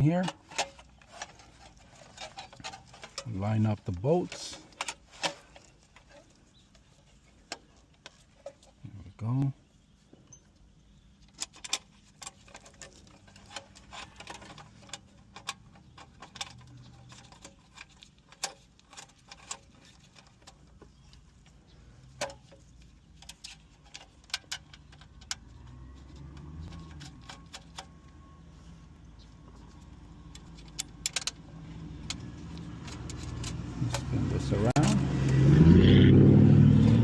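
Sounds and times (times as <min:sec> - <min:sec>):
small clicks and metallic taps: 0:29.2 - 0:35.4.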